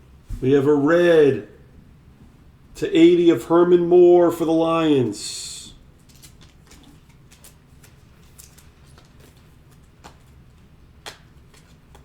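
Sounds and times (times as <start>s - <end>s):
cards rustling: 6.0s - 12.0s.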